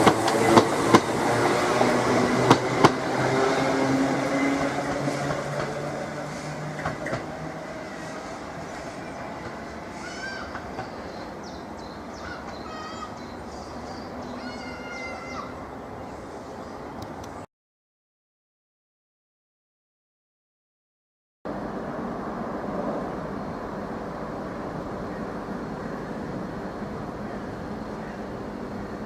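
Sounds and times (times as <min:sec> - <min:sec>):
train wheels clicking over rail joints: 0:00.0 - 0:11.2
train engine hum: 0:00.0 - 0:17.5, 0:21.5 - 0:29.0
birds chirping faintly: 0:07.8 - 0:17.5.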